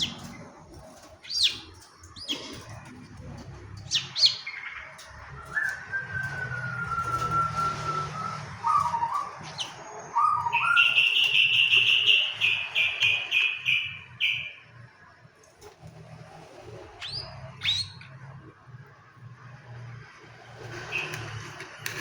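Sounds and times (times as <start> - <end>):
bird whistling and chirping: 1.2 - 2.4, 3.9 - 14.6, 17.0 - 18.1.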